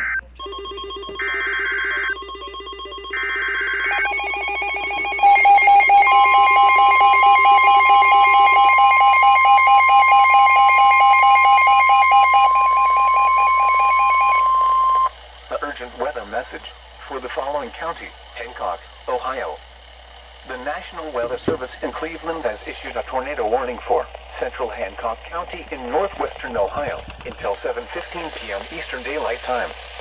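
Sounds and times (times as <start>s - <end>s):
pulsing electronic alarm beeps: 0.0s - 15.1s
steady warning alarm tone: 0.0s - 15.2s, 21.2s - 22.4s.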